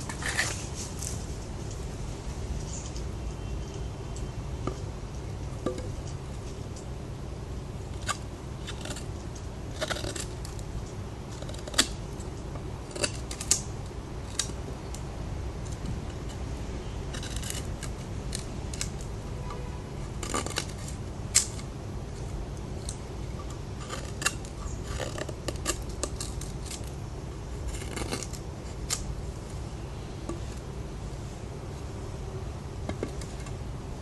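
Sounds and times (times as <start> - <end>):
knife slicing and scraping: 0.0 - 1.2, 9.7 - 10.6, 17.1 - 19.1, 20.1 - 21.7, 23.8 - 26.9, 27.6 - 29.1
steady low hum: 0.0 - 34.0.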